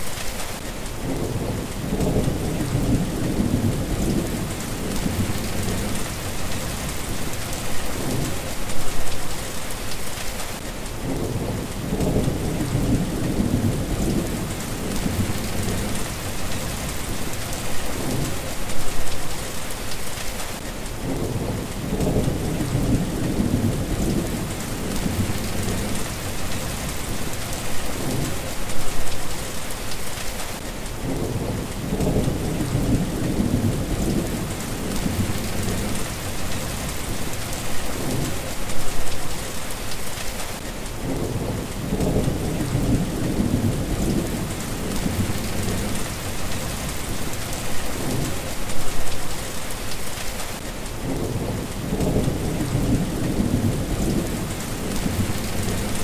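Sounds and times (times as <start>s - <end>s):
steady rain hissing: 0.0s - 56.0s
low rolling thunder: 1.0s - 8.5s, 11.0s - 18.5s, 21.0s - 28.5s, 31.0s - 38.9s, 41.0s - 49.1s, 51.0s - 56.0s.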